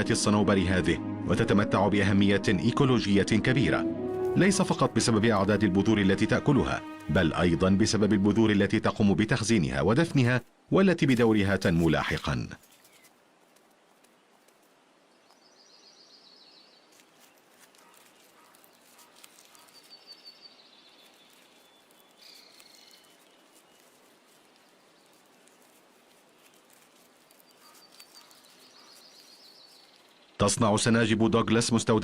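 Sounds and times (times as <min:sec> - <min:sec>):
soft hiss: 0:10.1 - 0:30.4
high trilled bird calls: 0:15.3 - 0:30.4.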